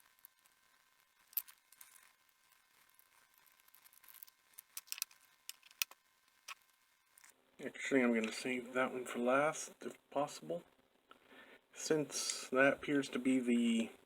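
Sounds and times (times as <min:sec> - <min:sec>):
screwdriver clicks and scrapes: 0:02.8 - 0:06.6.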